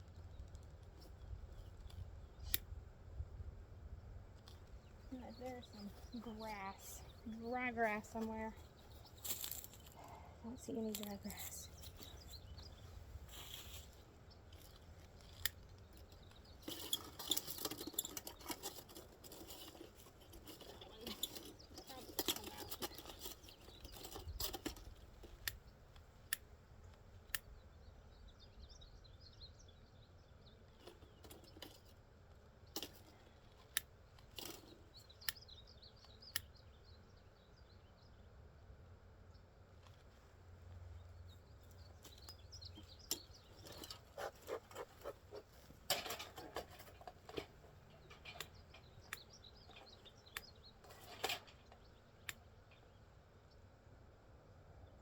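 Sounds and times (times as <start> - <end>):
crackly rustling: 4.2 - 27.2, 30.7 - 36.2, 39.7 - 53.0.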